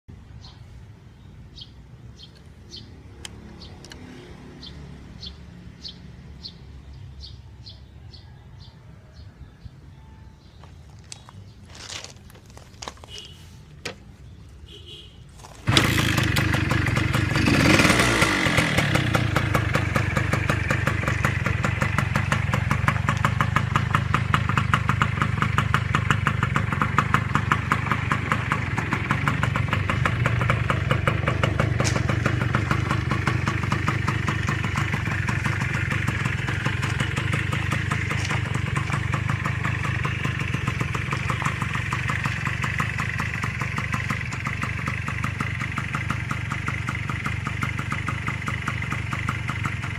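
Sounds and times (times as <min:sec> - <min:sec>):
two-stroke motorcycle engine: 0:15.4 - 0:49.9.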